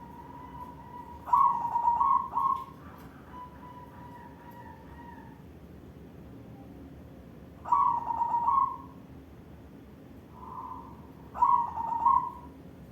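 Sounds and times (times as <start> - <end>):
dove cooing: 0.0 - 5.4, 7.6 - 9.0, 10.4 - 12.5.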